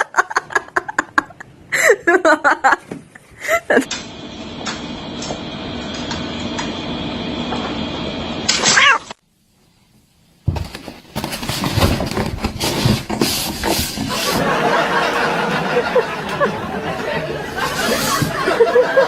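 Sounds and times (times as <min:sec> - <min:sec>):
background noise: 0:00.0 - 0:03.9, 0:08.7 - 0:19.0
cat meowing: 0:08.6 - 0:09.2.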